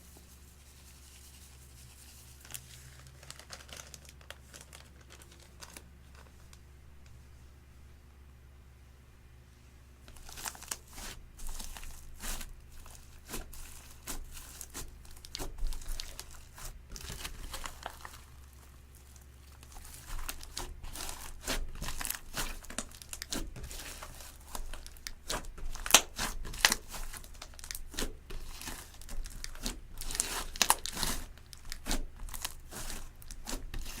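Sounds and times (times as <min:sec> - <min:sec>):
slime crackling and popping: 0:10.1 - 0:34.0.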